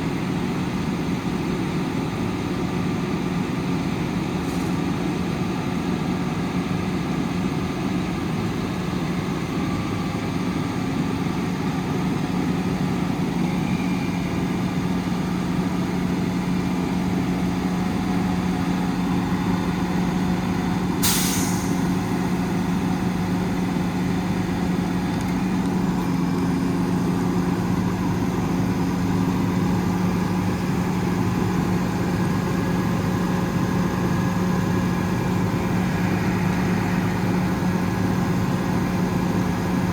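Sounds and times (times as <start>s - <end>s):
diesel engine idling: 0.0s - 39.9s
brief sharp hiss: 21.0s - 21.9s.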